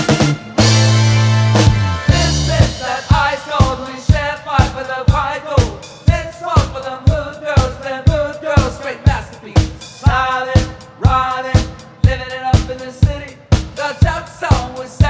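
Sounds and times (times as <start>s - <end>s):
band playing: 0.0s - 4.8s
steady drum beat: 0.0s - 15.0s.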